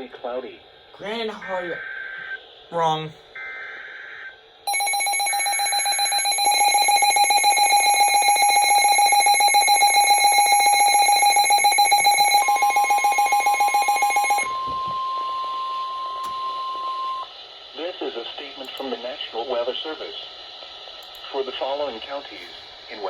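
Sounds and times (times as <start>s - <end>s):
fast-pulsing electronic alarm beep: 4.7s - 17.3s.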